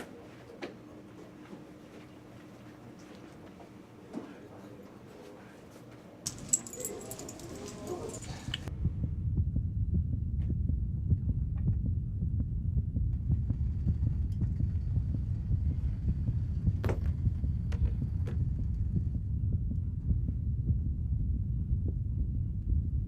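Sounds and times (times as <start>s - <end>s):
low throbbing hum: 6.3s - 23.0s.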